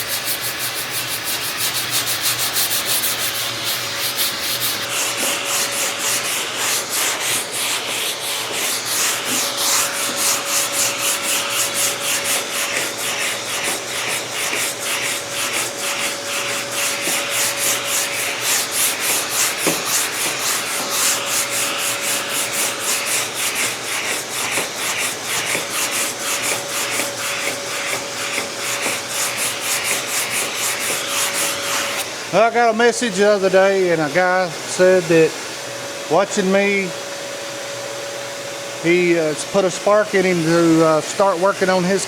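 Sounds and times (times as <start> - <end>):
sanding block on car body: 0.0 - 32.0.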